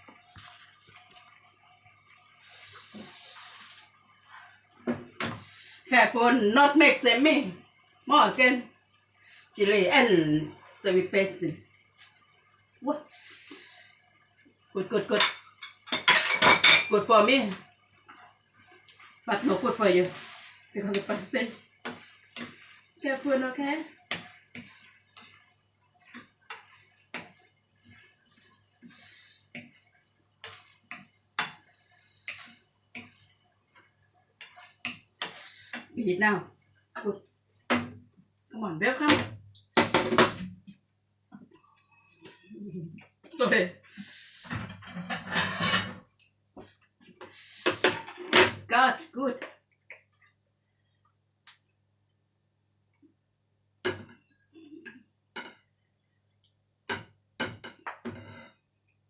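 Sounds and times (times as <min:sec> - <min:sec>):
fork scraping a plate: 0:44.5 - 0:46.0.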